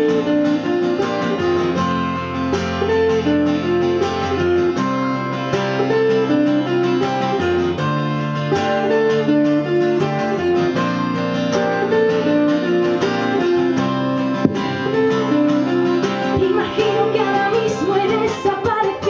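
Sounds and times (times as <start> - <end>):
guitar: 0.0 - 19.0
live band playing: 8.4 - 18.1
sharp knock: 14.4 - 15.0.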